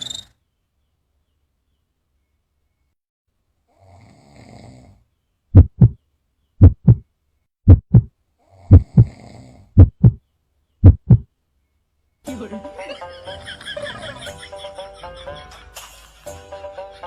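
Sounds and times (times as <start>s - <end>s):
faint snoring breaths: 3.7s - 5.1s, 8.4s - 9.8s
heartbeat thumps: 5.6s - 6.0s, 6.6s - 7.0s, 7.7s - 8.1s, 8.7s - 9.1s, 9.8s - 10.2s, 10.8s - 11.3s.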